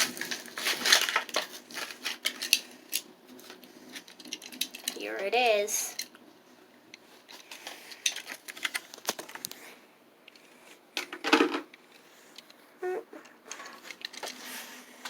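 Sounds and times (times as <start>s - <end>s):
packaging rustle: 0.0s - 5.0s
plastic packaging crackling: 0.0s - 5.0s, 7.3s - 9.6s.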